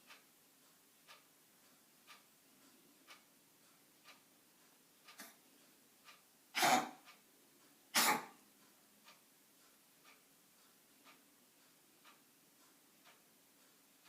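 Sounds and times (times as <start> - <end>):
clock ticking faintly: 0.0 - 14.0
pet coughing: 6.6 - 7.0, 7.9 - 8.4.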